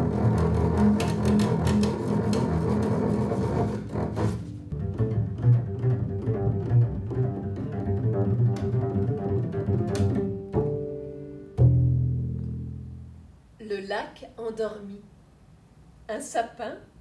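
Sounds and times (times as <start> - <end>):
double bass playing low notes: 0.0 - 13.5.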